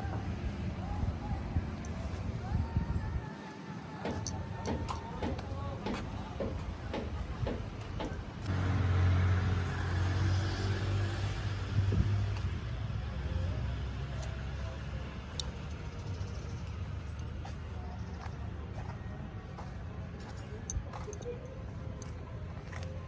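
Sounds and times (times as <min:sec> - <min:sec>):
bus engine running: 0:00.0 - 0:23.0.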